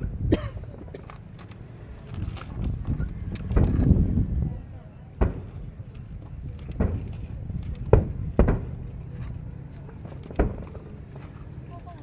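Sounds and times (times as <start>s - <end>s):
crowd murmuring: 0.0s - 12.0s
fireworks booming: 5.2s - 9.5s, 10.3s - 10.9s.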